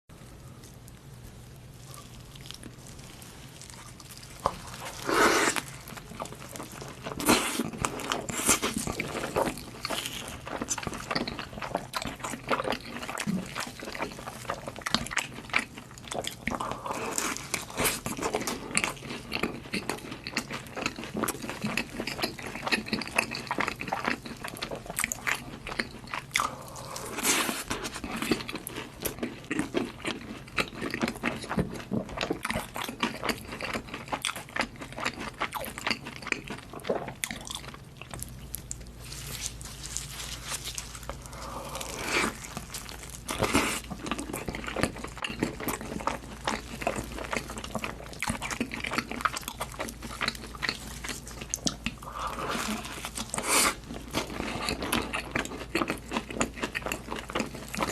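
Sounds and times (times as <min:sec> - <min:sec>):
crunchy chewing: 0:00.2 - 0:57.9.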